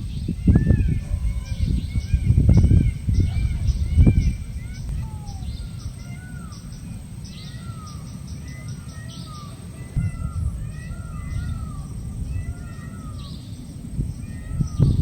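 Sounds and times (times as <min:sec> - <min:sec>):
low rumbling noise: 0:00.0 - 0:08.4
higher bird chirps: 0:00.0 - 0:15.0.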